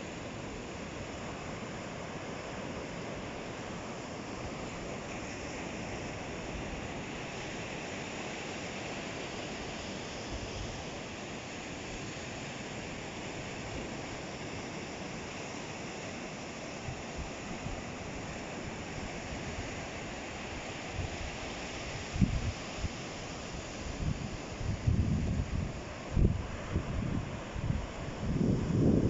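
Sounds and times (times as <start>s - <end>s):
surf breaking on shore: 0.0s - 29.0s
wind bumps on microphone: 22.1s - 23.0s, 23.6s - 29.0s.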